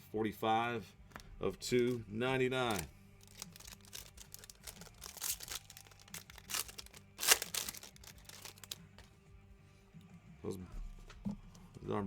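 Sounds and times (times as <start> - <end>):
card packaging crinkling: 2.6 - 9.1
packaging tearing: 2.6 - 9.1.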